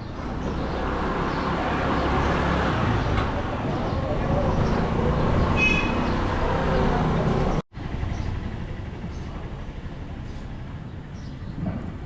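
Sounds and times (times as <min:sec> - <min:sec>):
street traffic noise: 0:00.0 - 0:12.0.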